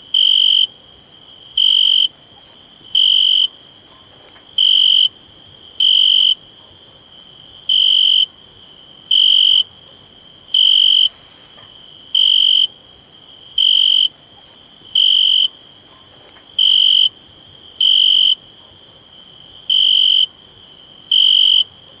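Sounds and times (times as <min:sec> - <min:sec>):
cricket chirping: 0:00.0 - 0:22.0.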